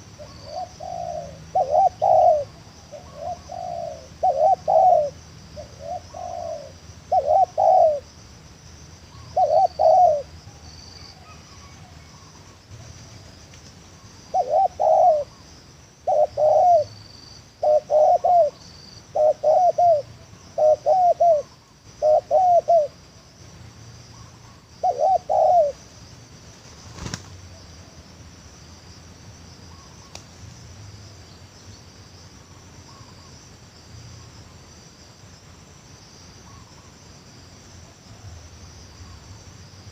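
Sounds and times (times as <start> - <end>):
dove cooing: 0.0 - 8.1, 9.1 - 10.4, 14.3 - 15.4, 16.0 - 17.0, 17.6 - 23.0, 24.2 - 25.8
insect chirring: 0.0 - 39.9.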